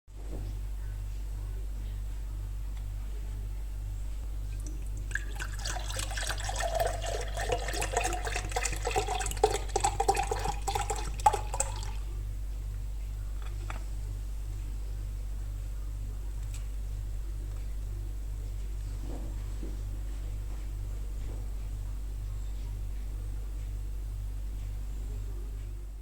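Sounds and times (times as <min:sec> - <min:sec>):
water pouring into a container: 0:04.6 - 0:12.0.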